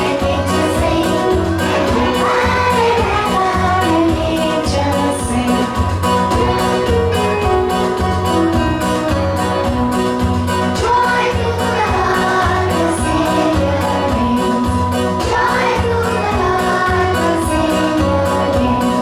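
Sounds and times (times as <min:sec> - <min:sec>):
children singing in chorus: 0:00.0 - 0:05.2, 0:10.8 - 0:14.6, 0:15.2 - 0:18.5
christmas song with steady beat: 0:00.0 - 0:19.0.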